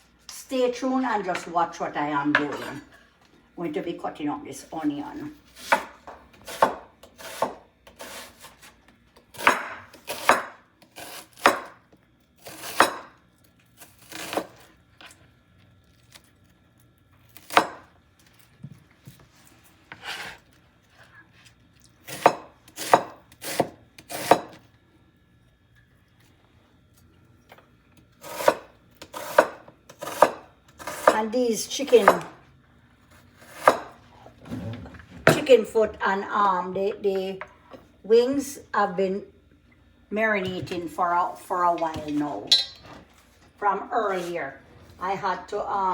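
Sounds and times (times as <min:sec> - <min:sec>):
knife chopping on cutting board: 0:05.5 - 0:08.7, 0:09.3 - 0:11.8, 0:12.4 - 0:13.1, 0:22.1 - 0:24.6, 0:28.2 - 0:31.2, 0:31.9 - 0:32.3, 0:33.4 - 0:34.0.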